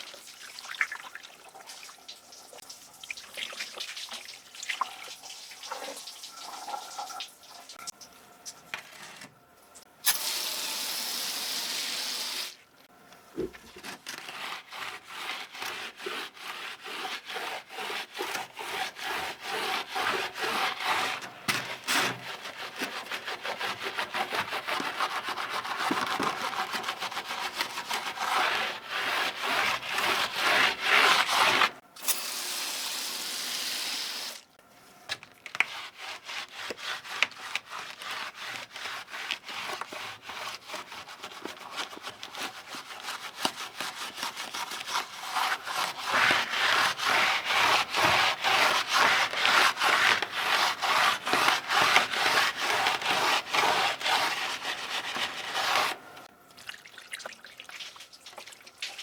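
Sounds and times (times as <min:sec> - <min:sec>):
brush scrubbing keyboard parts: 0:13.5 - 0:31.8, 0:35.1 - 0:56.0.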